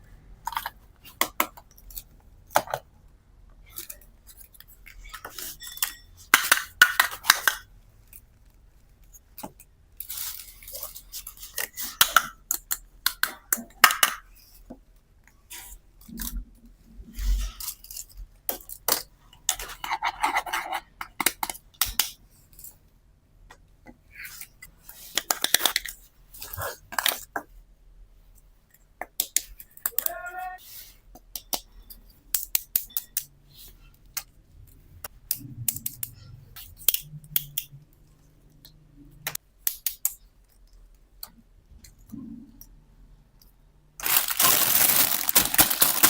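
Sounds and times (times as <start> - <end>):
plastic toy pieces clicking: 44.0 - 46.0.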